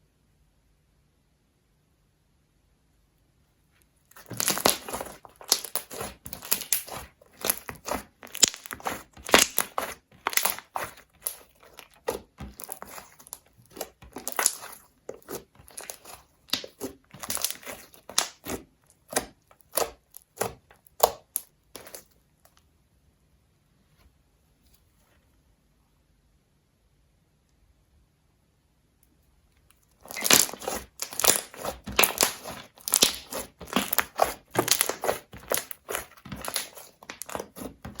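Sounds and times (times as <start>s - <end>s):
slime squeezed wet crackles: 4.1s - 22.1s, 29.9s - 38.0s.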